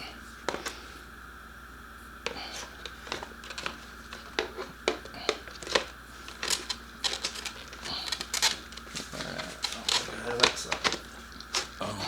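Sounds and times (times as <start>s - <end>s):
plastic parts clicking and knocking: 2.2s - 11.8s
plastic scrape: 2.3s - 11.8s.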